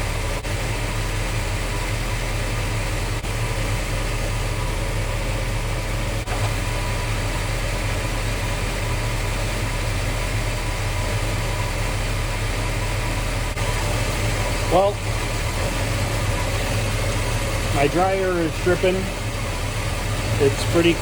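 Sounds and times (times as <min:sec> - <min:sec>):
air-conditioning compressor running: 0:00.0 - 0:21.0
car engine idling: 0:00.0 - 0:21.0.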